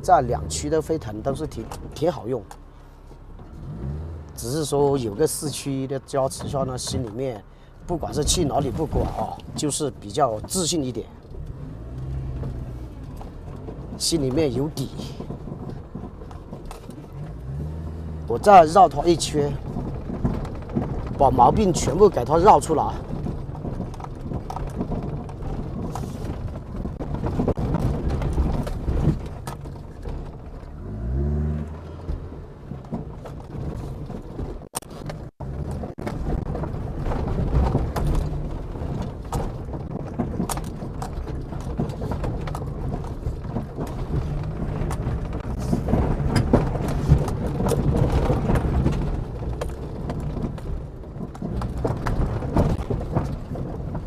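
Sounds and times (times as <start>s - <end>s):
chassis knocks and rattles: 0.0s - 54.0s
suv engine running: 0.0s - 54.0s.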